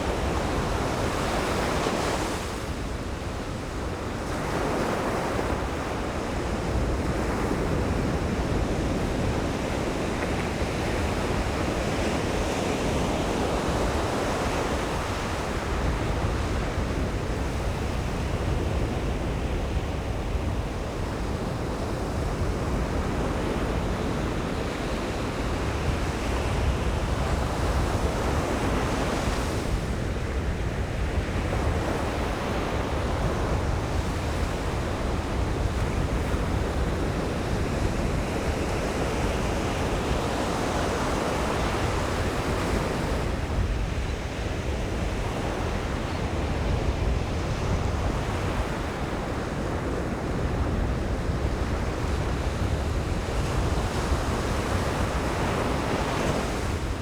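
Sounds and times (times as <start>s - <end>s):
wind rumbling on microphone: 0.0s - 57.0s.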